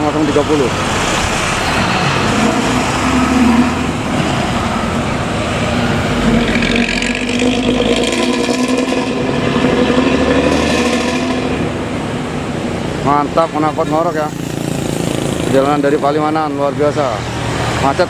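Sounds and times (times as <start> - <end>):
bus diesel engine growling: 0.0 - 18.0
road noise: 0.0 - 18.0.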